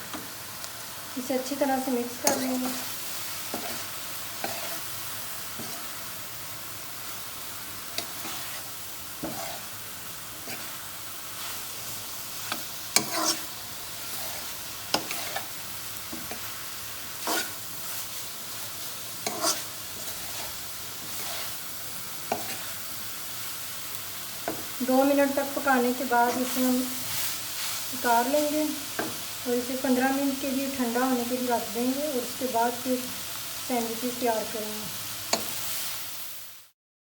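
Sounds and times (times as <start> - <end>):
chicken sizzling in oil: 0.0 - 36.8
utensil scraping and knocking pan: 9.2 - 9.6, 12.5 - 13.5, 14.1 - 15.5, 17.2 - 17.6, 19.2 - 21.5.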